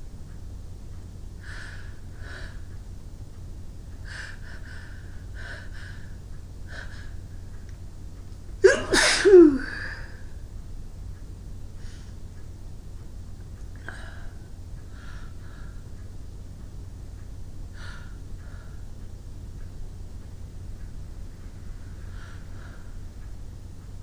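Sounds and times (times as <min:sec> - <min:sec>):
woman sneezing: 0:08.6 - 0:10.2.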